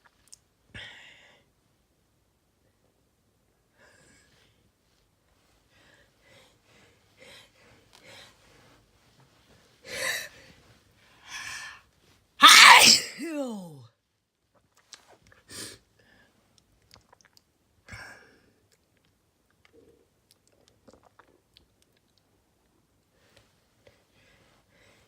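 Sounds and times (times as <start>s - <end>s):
person sneezing: 12.4s - 13.8s.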